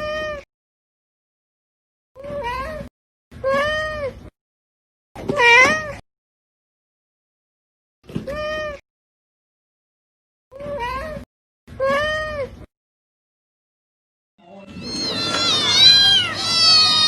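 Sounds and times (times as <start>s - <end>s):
cat meowing: 5.3s - 6.0s, 14.4s - 17.0s.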